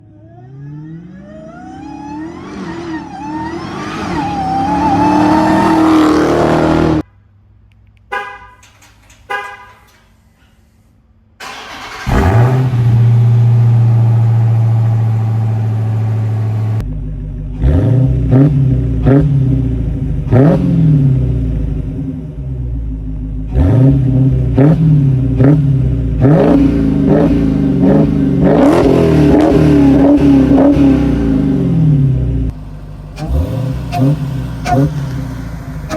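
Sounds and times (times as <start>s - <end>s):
car engine accelerating: 0.0s - 7.0s, 11.4s - 35.9s
supercharger whine: 0.0s - 7.0s, 11.4s - 35.9s
engine throttle blips: 7.9s - 10.6s, 11.4s - 35.9s
short horn-like beeps: 8.1s - 10.0s
car engine idling: 11.4s - 20.3s, 30.4s - 35.9s.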